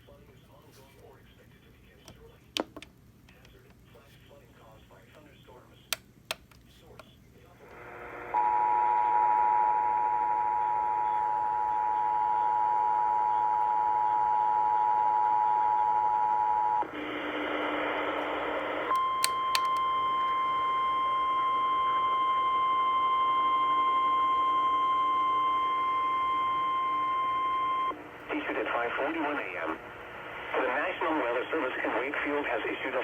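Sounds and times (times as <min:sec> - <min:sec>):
radio hiss: 0:00.0 - 0:06.0, 0:06.6 - 0:08.4, 0:16.8 - 0:19.0, 0:27.8 - 0:33.0
sharp clicks: 0:05.9 - 0:07.1, 0:18.9 - 0:19.8
steady warning alarm tone: 0:08.3 - 0:16.8, 0:18.9 - 0:28.0.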